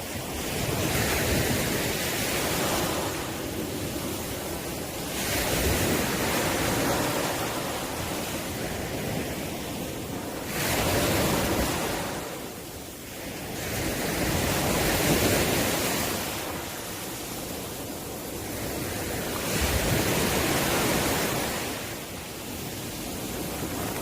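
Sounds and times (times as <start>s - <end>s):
sea waves surging: 0.0s - 24.0s.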